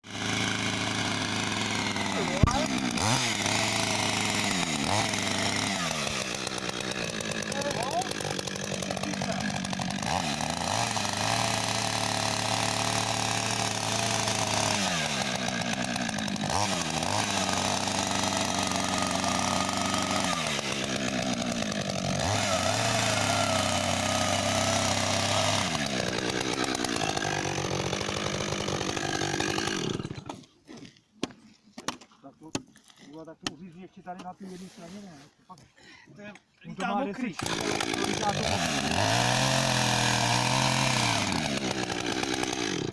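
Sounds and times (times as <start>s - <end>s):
chainsaw cutting ice: 0.0s - 33.6s, 36.8s - 42.9s.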